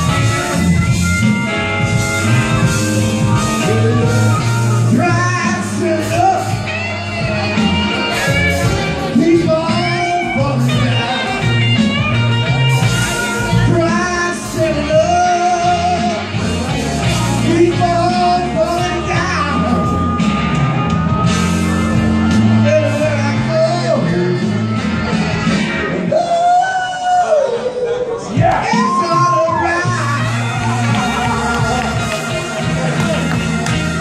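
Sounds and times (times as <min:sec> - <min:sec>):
bass and guitar backing track: 0:00.0 - 0:34.0
man singing: 0:03.2 - 0:11.9, 0:12.9 - 0:20.6, 0:22.2 - 0:24.7, 0:26.1 - 0:33.2.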